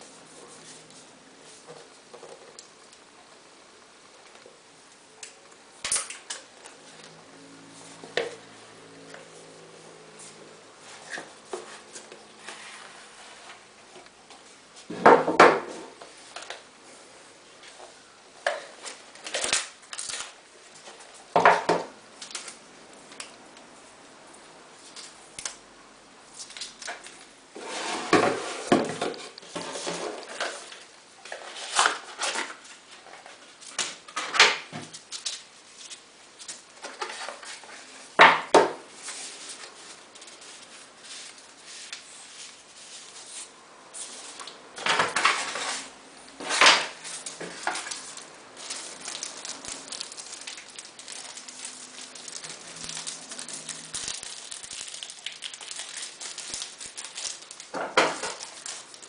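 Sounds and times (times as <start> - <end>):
packaging rustling: 46.6 - 59.0.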